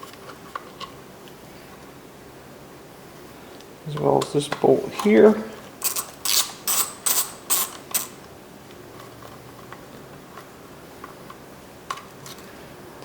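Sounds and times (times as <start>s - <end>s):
socket ratchet clicking: 5.8s - 8.2s.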